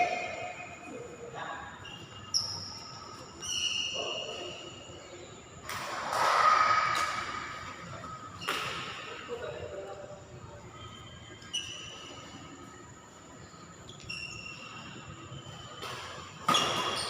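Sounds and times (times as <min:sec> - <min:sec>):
shoe squeaks: 0:00.0 - 0:05.1, 0:10.6 - 0:17.0.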